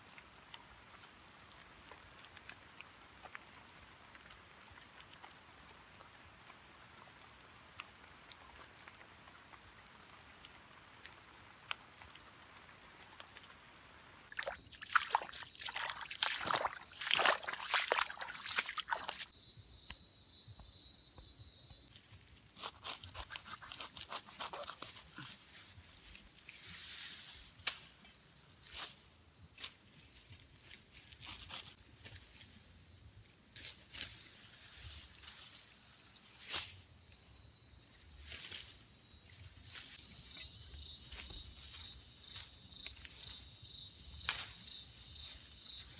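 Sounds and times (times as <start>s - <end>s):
water dripping and sloshing: 14.2s - 19.3s
clicks and splashes: 14.3s - 19.3s
insect chorus drone: 14.3s - 45.9s.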